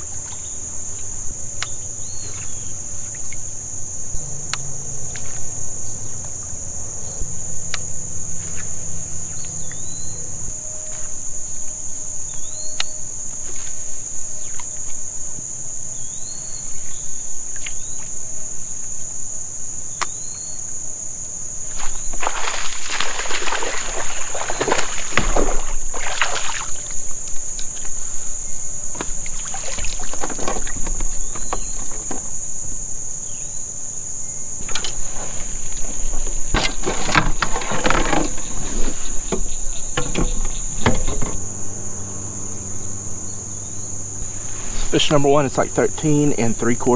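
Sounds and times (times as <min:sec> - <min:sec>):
high-pitched insect chorus: 0:00.0 - 0:46.9
clicks: 0:34.6 - 0:46.7
bird chirping: 0:34.6 - 0:46.9.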